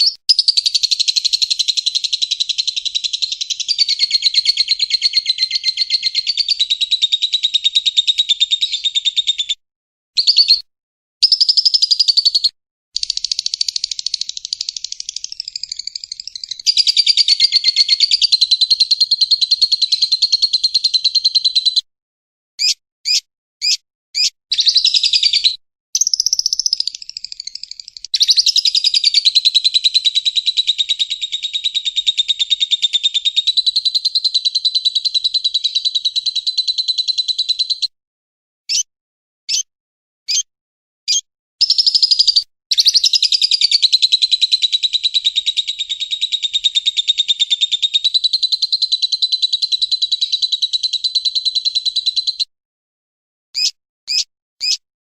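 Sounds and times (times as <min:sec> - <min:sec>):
lovebird chattering trill: 0:00.0 - 0:09.5, 0:10.2 - 0:10.6, 0:11.2 - 0:21.8, 0:22.6 - 0:37.9, 0:39.5 - 0:39.7, 0:40.3 - 0:40.5, 0:41.1 - 0:52.5, 0:53.6 - 0:54.8
short sharp bird chirps: 0:00.0 - 0:09.6, 0:10.2 - 0:19.8, 0:22.6 - 0:29.3, 0:38.7 - 0:38.9, 0:39.5 - 0:39.7, 0:40.3 - 0:40.5, 0:41.1 - 0:43.8, 0:53.6 - 0:54.8.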